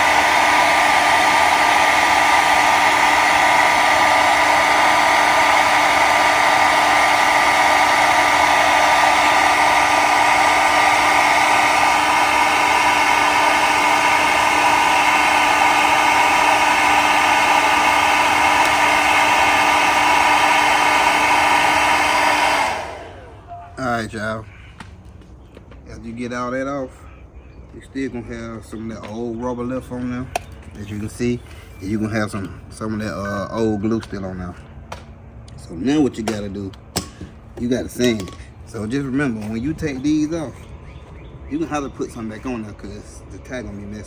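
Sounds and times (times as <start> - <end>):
blow dryer running: 0.0 - 23.7.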